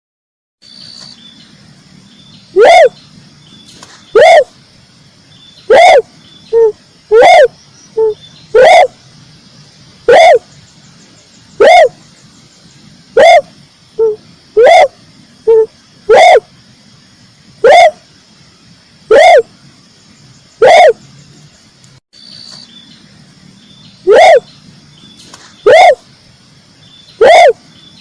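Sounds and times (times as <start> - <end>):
dove cooing: 2.6 - 3.0, 4.2 - 4.5, 5.7 - 8.9, 10.1 - 10.5, 11.6 - 12.0, 13.2 - 16.5, 17.6 - 18.0, 19.1 - 19.5, 20.6 - 21.0, 24.1 - 24.5, 25.6 - 26.0, 27.2 - 27.6.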